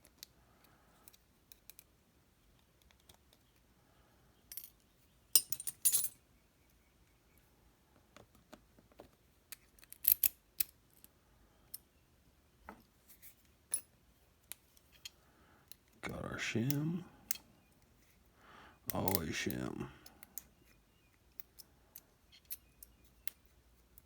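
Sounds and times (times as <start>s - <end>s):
metal parts clicking and clinking: 4.5s - 6.2s.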